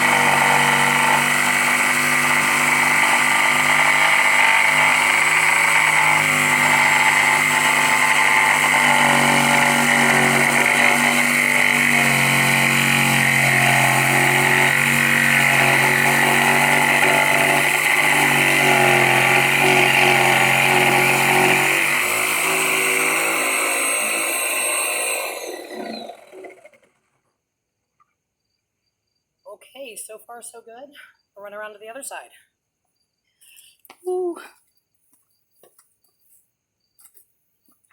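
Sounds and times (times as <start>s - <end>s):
electric jigsaw cutting: 0.0s - 27.2s.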